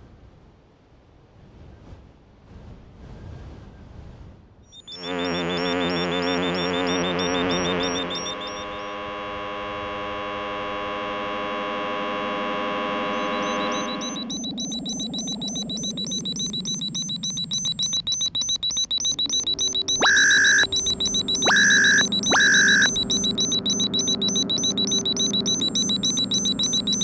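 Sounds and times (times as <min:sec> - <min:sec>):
high-pitched electronic pulsing: 0:04.8 - 0:08.9, 0:12.2 - 0:27.0
loud beeps: 0:04.8 - 0:08.9, 0:13.1 - 0:27.0
steady hum: 0:04.9 - 0:08.8, 0:11.2 - 0:27.0
falling electronic sweep: 0:12.6 - 0:27.0.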